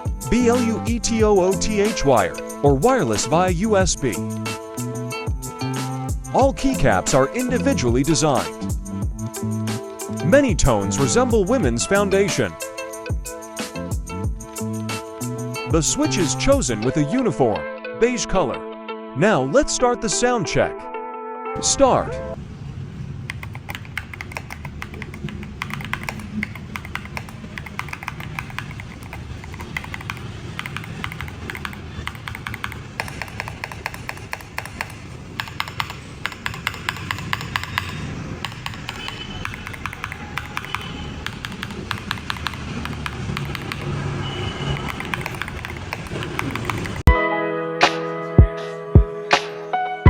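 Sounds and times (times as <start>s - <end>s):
mechanical keyboard key clacks: 23.3s - 44.0s, 44.8s - 47.1s.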